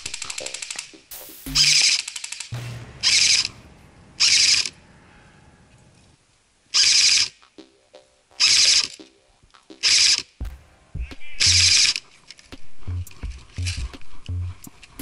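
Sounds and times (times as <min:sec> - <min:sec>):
airsoft rifle full-auto bursts: 0:09.8 - 0:10.2.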